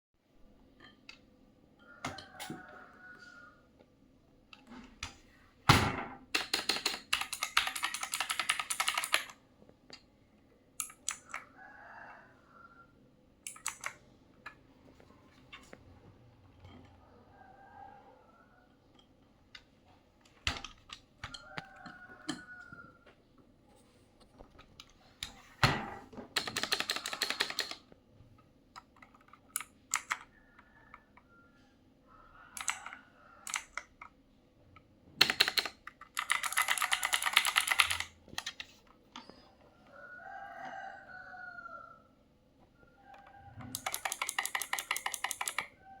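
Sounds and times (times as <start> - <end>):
clicky mechanical keyboard typing: 6.3 - 10.0, 10.8 - 11.5, 13.4 - 14.6, 26.3 - 28.0, 28.7 - 31.1, 32.6 - 34.1, 35.2 - 39.4, 43.1 - 45.8.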